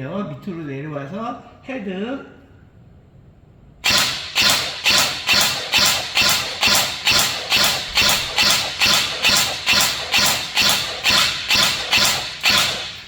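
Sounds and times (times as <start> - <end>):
airsoft rifle firing single shots: 3.8 - 13.0.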